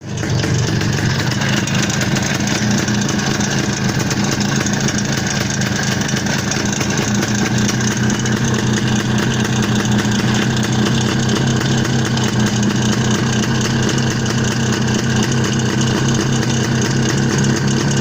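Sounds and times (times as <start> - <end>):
two-stroke engine idling with knock: 0.0 - 18.0.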